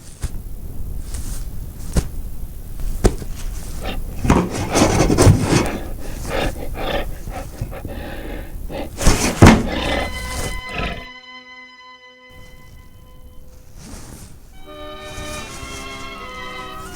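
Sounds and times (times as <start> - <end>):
scuffing and scraping: 0.0 - 11.1, 12.3 - 16.9
loud thumps: 8.8 - 10.6.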